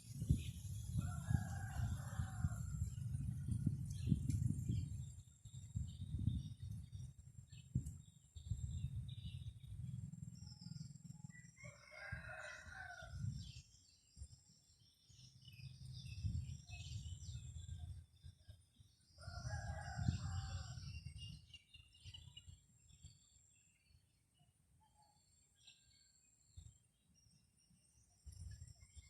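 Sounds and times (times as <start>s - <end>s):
wind rumbling on microphone: 0.0s - 23.6s, 28.0s - 29.0s
rooster crowing: 1.0s - 2.8s, 11.3s - 13.2s, 19.2s - 20.8s.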